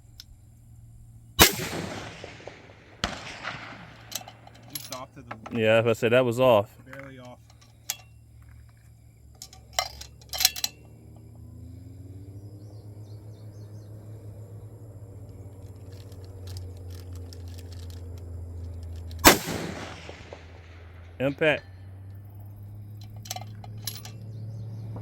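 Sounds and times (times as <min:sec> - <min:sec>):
steady low rumble: 0:00.0 - 0:11.6, 0:12.2 - 0:25.0
rifle shot with echo: 0:01.4 - 0:04.9, 0:19.2 - 0:21.8
sharp clicks: 0:01.4 - 0:05.8, 0:15.2 - 0:25.0.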